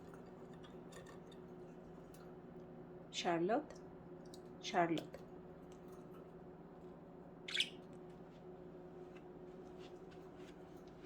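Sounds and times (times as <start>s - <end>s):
budgerigar chirp: 7.5s - 7.8s.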